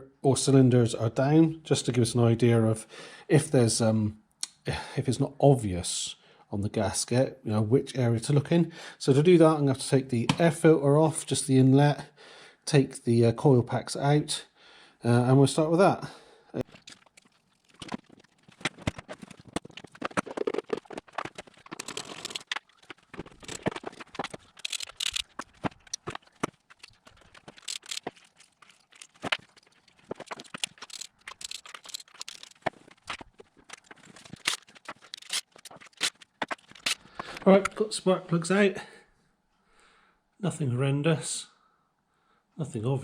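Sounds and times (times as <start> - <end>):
plastic rustling: 16.6 - 37.4
tools clicking and knocking: 18.6 - 37.0.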